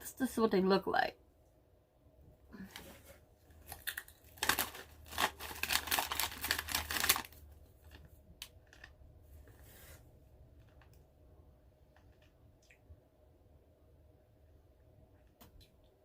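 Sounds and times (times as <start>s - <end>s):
crisp packet crinkling: 3.6s - 8.0s.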